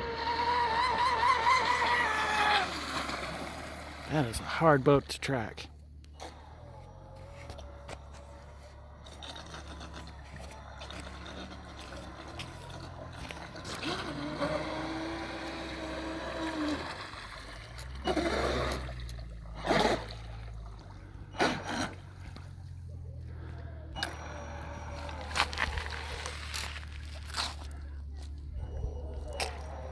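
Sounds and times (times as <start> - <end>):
electric motor whine of speedboat: 0.0 - 4.2, 5.8 - 29.9.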